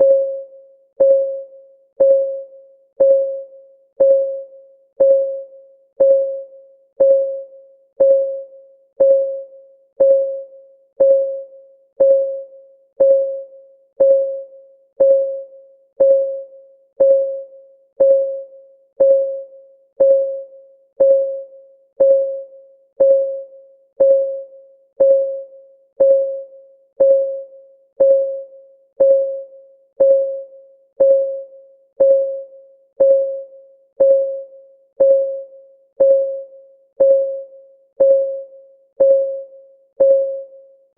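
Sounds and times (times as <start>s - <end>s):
timer ticking: 2.0s - 2.4s, 3.0s - 3.4s, 4.0s - 4.4s, 5.0s - 5.4s, 6.0s - 6.4s, 7.0s - 7.4s, 8.0s - 8.4s, 9.0s - 9.4s, 10.0s - 10.4s, 11.0s - 11.4s, 12.0s - 12.4s, 13.0s - 13.4s, 14.0s - 14.4s, 15.0s - 15.4s, 16.0s - 16.4s, 17.0s - 17.4s, 18.0s - 18.4s, 19.0s - 19.4s, 20.0s - 20.4s, 21.0s - 21.4s, 22.0s - 22.4s, 23.0s - 23.4s, 24.0s - 24.4s, 25.0s - 25.4s, 26.0s - 26.4s, 27.0s - 27.4s, 28.0s - 28.4s, 29.0s - 29.4s, 30.0s - 30.4s, 31.0s - 31.4s, 32.0s - 32.4s, 33.0s - 33.4s, 34.0s - 34.4s, 35.0s - 35.4s, 36.0s - 36.4s, 37.0s - 37.4s, 38.0s - 38.4s, 39.0s - 39.4s.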